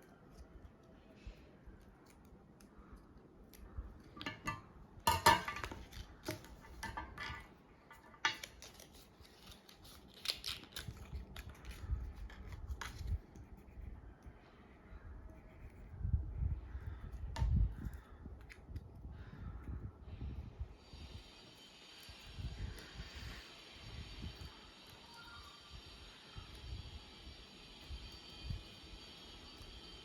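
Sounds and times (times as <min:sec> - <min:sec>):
scissors snipping paper: 0:00.0 - 0:04.2, 0:08.0 - 0:14.3.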